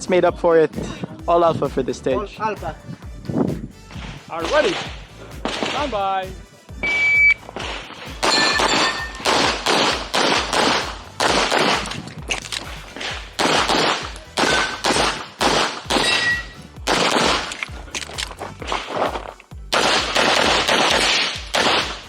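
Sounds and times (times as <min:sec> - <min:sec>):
pistol shots: 0:04.6 - 0:05.9, 0:07.6 - 0:22.0
shot timer beep: 0:06.8 - 0:07.4
bullets ringing off steel targets: 0:07.6 - 0:12.0, 0:13.0 - 0:17.8, 0:19.7 - 0:22.0.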